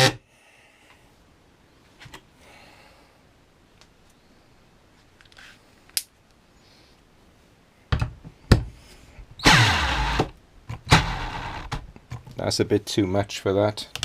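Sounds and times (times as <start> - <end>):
cordless drill driving a screw: 9.4 - 10.3, 10.9 - 11.8.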